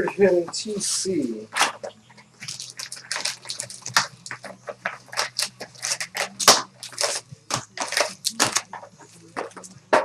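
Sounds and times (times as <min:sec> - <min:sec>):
foil wrappers crinkling: 0:02.4 - 0:09.7.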